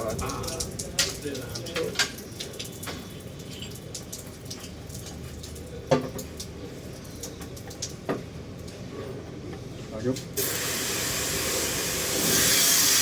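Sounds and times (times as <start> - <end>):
water running and splashing: 0.0 - 8.1.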